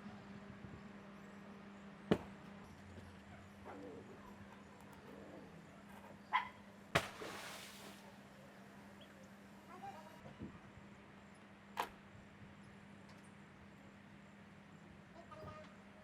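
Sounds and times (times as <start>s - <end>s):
steady low hum: 0.0s - 16.0s
sharp knocks: 2.1s - 2.4s
dog bark: 5.7s - 6.6s.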